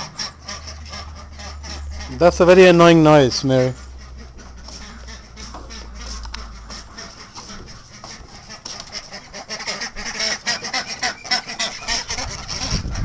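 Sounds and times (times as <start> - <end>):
geese honking: 0.0 - 13.0.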